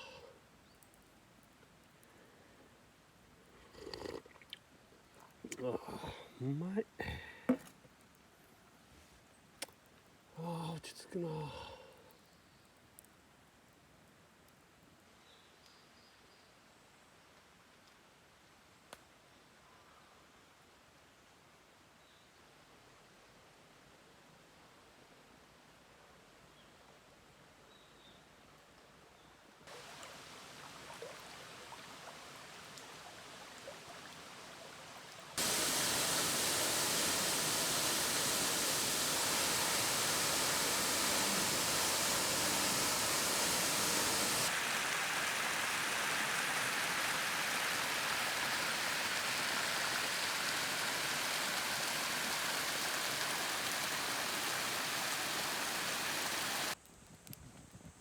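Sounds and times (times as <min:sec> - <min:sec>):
river water rushing: 0:29.7 - 0:56.8.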